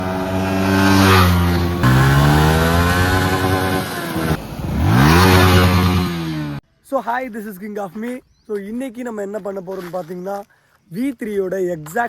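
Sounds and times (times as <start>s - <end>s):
motorcycle engine running loudly: 0.0s - 6.6s.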